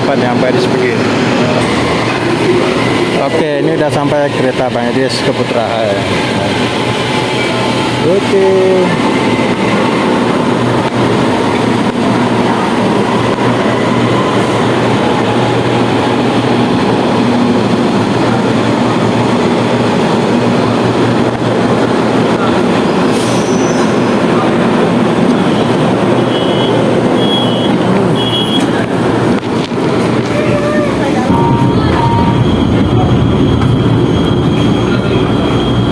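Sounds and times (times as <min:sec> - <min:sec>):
light-rail train rumbling: 0:00.0 - 0:35.9
short high beeps: 0:31.3 - 0:35.9.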